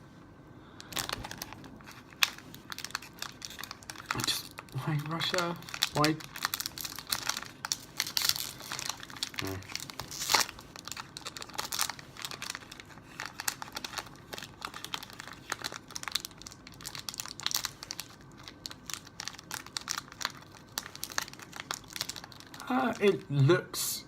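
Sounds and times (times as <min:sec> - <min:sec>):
snack wrapper crumpling and tearing: 0:00.8 - 0:23.2.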